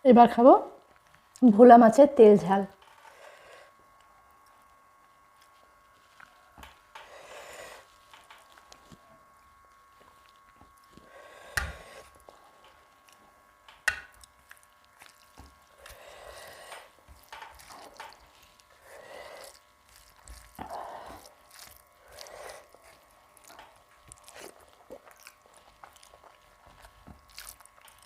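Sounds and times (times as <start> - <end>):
mouth and chewing sounds: 9.7 - 13.3, 13.9 - 28.0.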